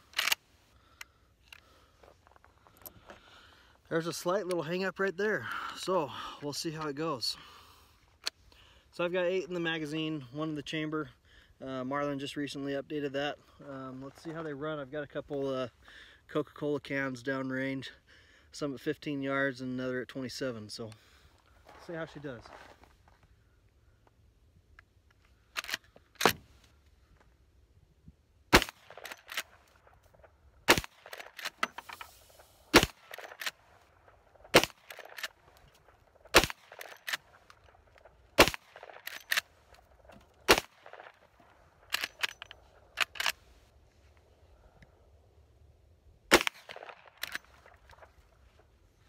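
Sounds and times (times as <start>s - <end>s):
rifle lever clacking: 0.1s - 0.4s, 41.9s - 43.4s
rifle shots: 28.5s - 29.6s, 30.6s - 31.7s, 32.7s - 33.7s, 34.4s - 35.5s, 36.2s - 37.4s, 38.4s - 39.5s, 40.4s - 41.3s, 46.3s - 47.8s.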